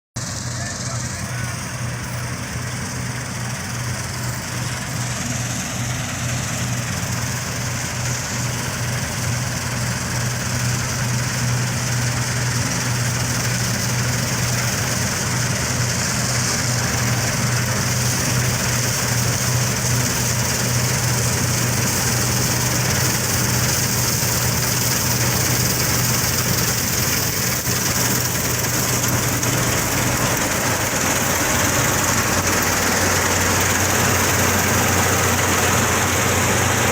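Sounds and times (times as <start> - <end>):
combine harvester engine humming: 0.2 - 36.9.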